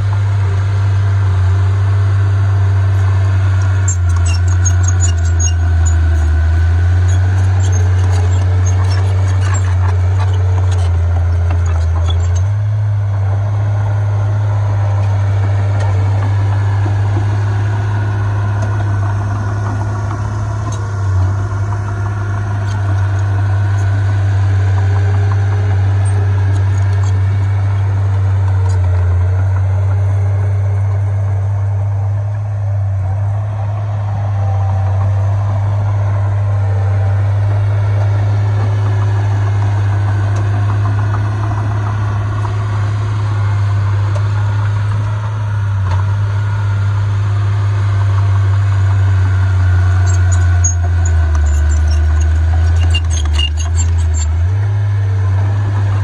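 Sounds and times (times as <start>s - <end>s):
heavy diesel engine droning: 0.0s - 56.0s.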